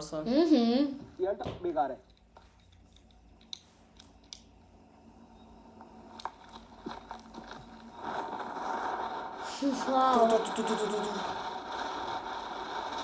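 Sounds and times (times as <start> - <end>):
faint clicks and crackles: 1.6 - 13.0
spinning firecracker hissing: 7.3 - 13.0.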